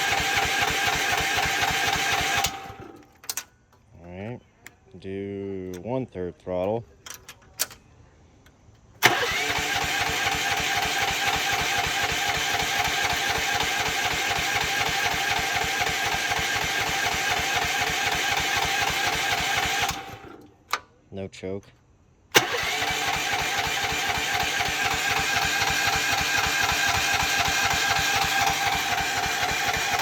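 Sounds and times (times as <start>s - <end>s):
small engine running: 0.0s - 3.0s, 9.0s - 20.4s, 22.4s - 30.0s.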